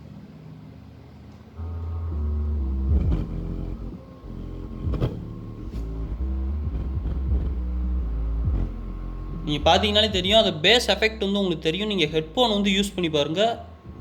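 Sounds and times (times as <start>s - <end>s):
subwoofer playing deep bass line: 1.6s - 14.0s
sharp beat hits: 2.8s - 13.2s.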